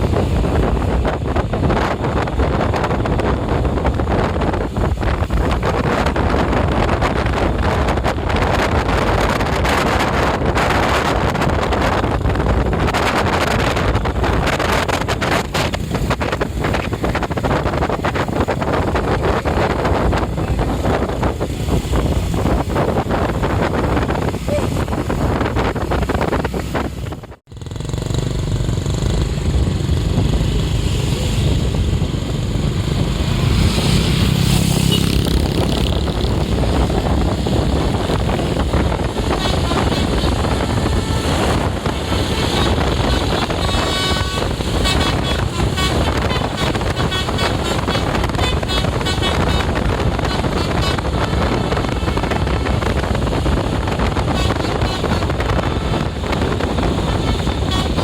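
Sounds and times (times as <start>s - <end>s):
bus engine rumbling: 0.0s - 58.0s
multi-tone horn playing tune: 39.1s - 52.3s, 54.2s - 58.0s.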